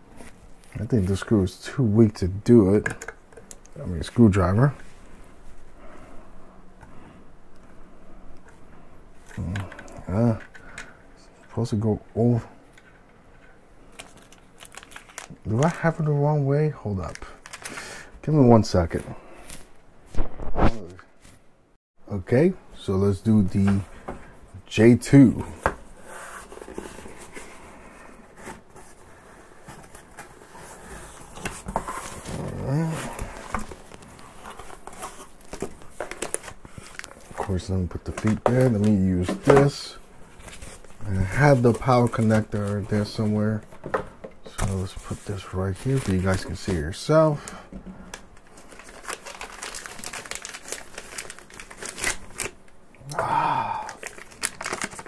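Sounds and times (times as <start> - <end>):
packaging rustling: 13.9 - 15.9, 17.0 - 18.0, 28.3 - 43.8, 44.5 - 52.7, 53.9 - 55.0
person humming: 53.0 - 54.0.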